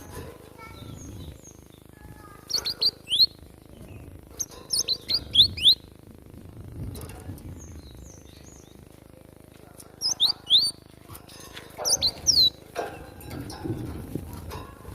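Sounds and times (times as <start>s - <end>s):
bird chirping: 0.6s - 6.0s, 7.5s - 8.9s, 9.9s - 13.3s.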